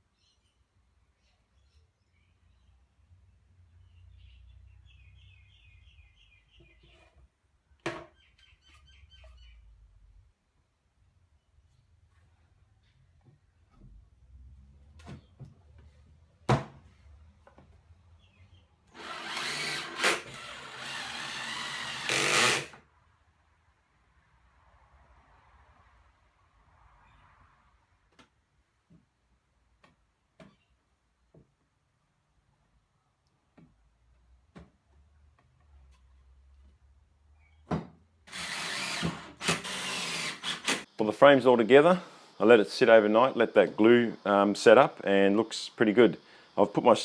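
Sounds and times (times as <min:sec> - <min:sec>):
power drill running: 0:18.9 - 0:22.8, 0:38.3 - 0:40.8.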